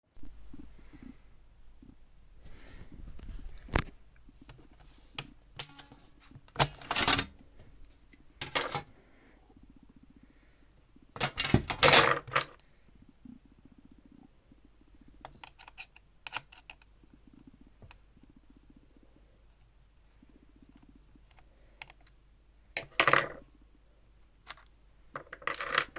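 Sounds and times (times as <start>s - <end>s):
small hard parts clicking and rattling: 4.4s - 7.4s, 8.1s - 8.9s, 11.2s - 12.6s, 15.2s - 17.0s, 24.4s - 25.9s.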